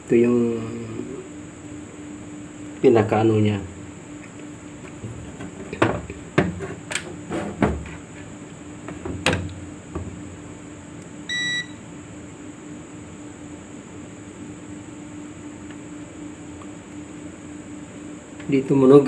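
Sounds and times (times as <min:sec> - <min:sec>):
steady low hum: 0:00.0 - 0:19.0
short electronic beep: 0:11.3 - 0:11.8.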